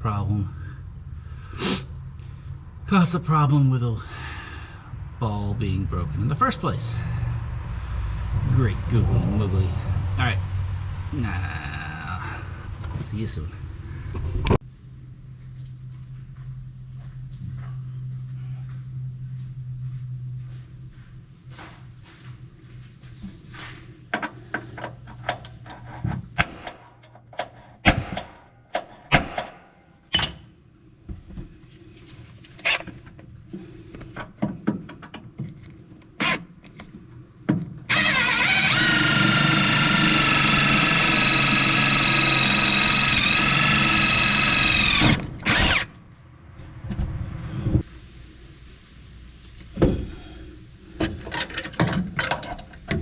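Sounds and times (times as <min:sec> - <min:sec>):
power drill running: 0:37.9 - 0:46.0
tools and metal parts clicking: 0:51.0 - 0:53.0.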